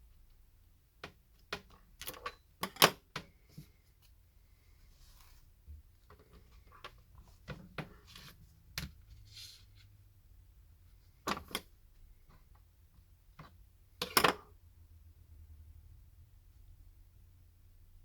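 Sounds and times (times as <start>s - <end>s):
clicks of tools and phone parts: 1.0s - 3.3s, 14.0s - 14.5s.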